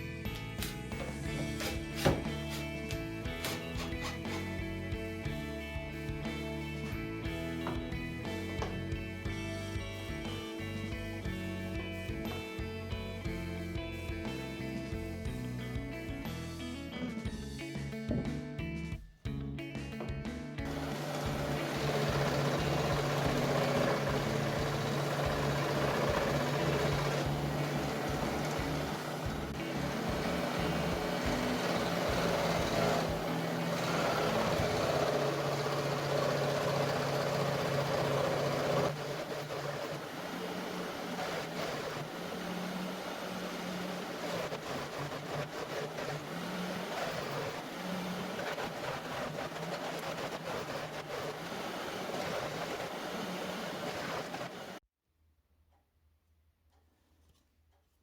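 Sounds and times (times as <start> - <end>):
vacuum motor humming: 20.7 - 54.8.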